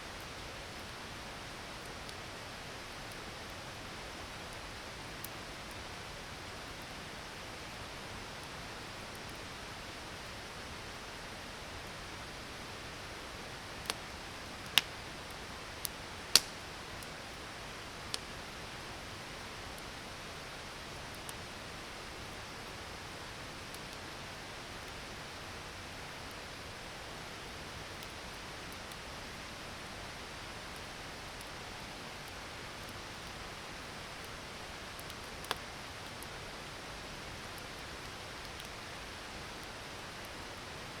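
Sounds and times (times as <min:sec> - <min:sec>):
campfire wood crackling and popping: 0:13.6 - 0:19.7, 0:20.6 - 0:25.2, 0:30.8 - 0:40.4.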